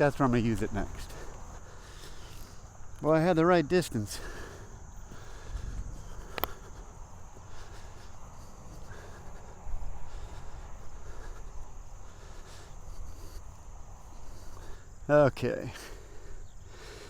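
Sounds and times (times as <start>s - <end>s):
high-pitched insect chorus: 0.0s - 17.0s
wind rumbling on microphone: 4.2s - 15.1s.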